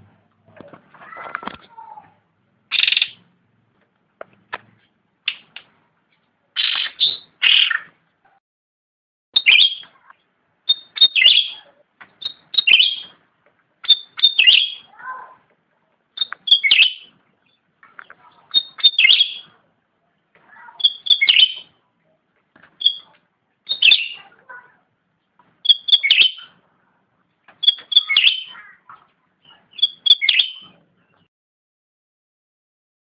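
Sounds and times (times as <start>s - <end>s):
songbird singing sharp phrases: 2.7s - 3.2s, 6.5s - 8.0s, 9.4s - 13.2s, 13.8s - 15.3s, 16.1s - 19.6s, 20.5s - 21.8s, 22.7s - 24.7s, 25.6s - 26.6s, 27.5s - 31.3s.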